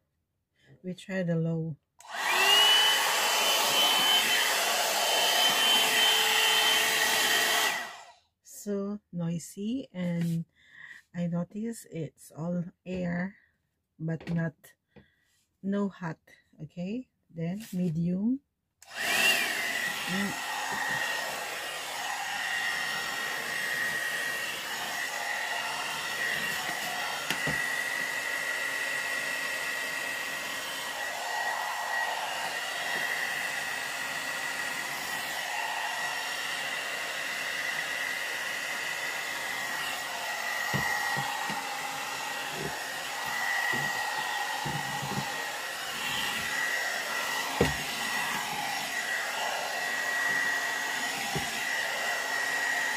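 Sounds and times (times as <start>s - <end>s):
hair dryer blowing with high whine: 2.0s - 8.2s, 18.8s - 52.9s.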